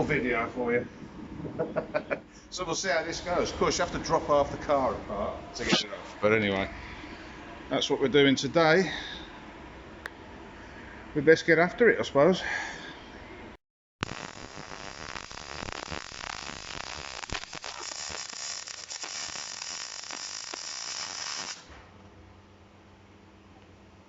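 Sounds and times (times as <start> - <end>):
welding arc crackling: 14.0 - 21.8.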